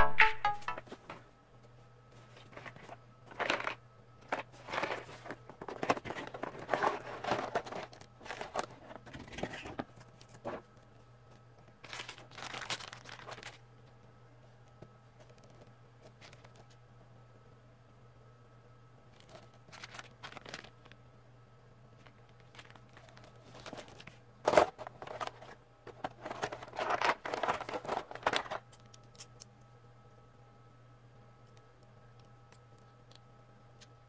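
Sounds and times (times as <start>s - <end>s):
faint low hum: 0.0s - 34.0s
plastic packaging crinkling: 2.4s - 10.7s, 11.8s - 13.6s, 19.1s - 21.0s, 22.0s - 29.3s.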